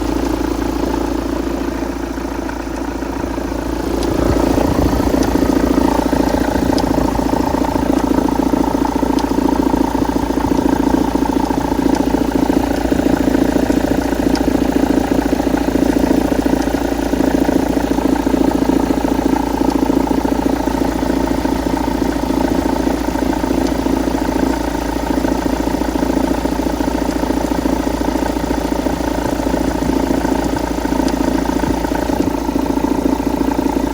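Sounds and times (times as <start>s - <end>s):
engine knock: 0.0s - 33.9s
engine running: 0.0s - 33.9s.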